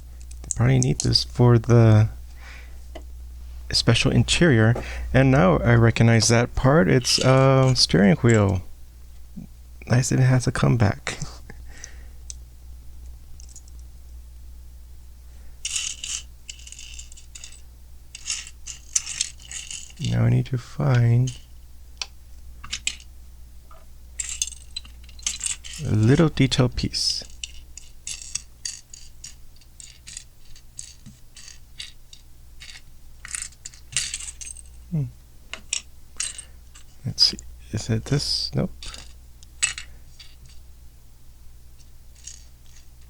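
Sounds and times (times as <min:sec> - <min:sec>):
plastic pieces clicking and rattling: 0:13.4 - 0:13.8, 0:15.6 - 0:20.1, 0:22.6 - 0:23.1, 0:24.2 - 0:26.4, 0:27.2 - 0:34.8, 0:42.2 - 0:42.9
plastic bricks clicking and rattling: 0:15.6 - 0:20.1.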